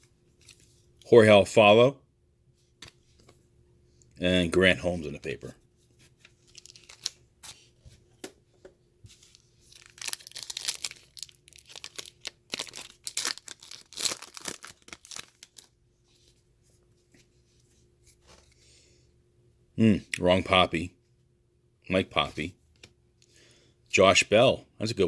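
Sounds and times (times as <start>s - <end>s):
wrapper tearing and crinkling: 6.4s - 7.2s, 9.2s - 15.7s.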